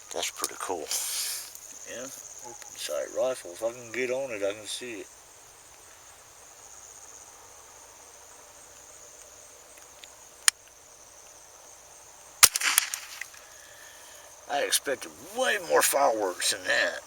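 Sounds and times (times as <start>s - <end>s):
crickets chirping: 0.0s - 17.0s
rifle shots: 12.4s - 13.2s.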